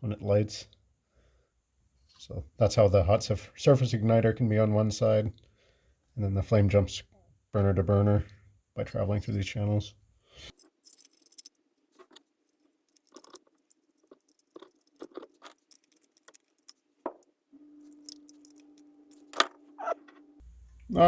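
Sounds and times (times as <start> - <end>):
faint steady hum: 0.0 - 21.0
metal parts clicking and scraping: 10.5 - 17.3, 17.9 - 19.6.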